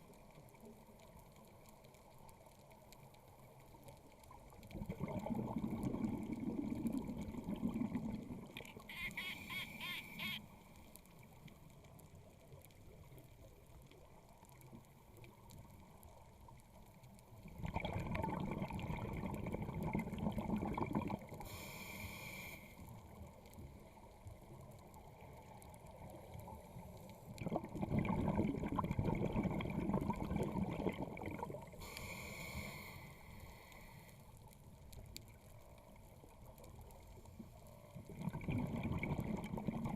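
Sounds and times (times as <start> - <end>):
bubbling exhale: 4.7 - 8.6, 17.6 - 22.8, 27.4 - 34.1, 38.0 - 39.9
regulator hissing inhale: 21.4 - 22.9, 31.8 - 34.3.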